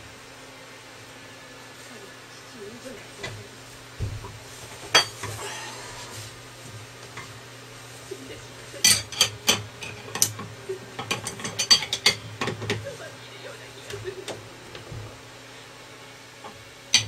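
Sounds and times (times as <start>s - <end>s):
metal tools clinking and clanking: 8.8s - 10.4s, 11.0s - 12.8s.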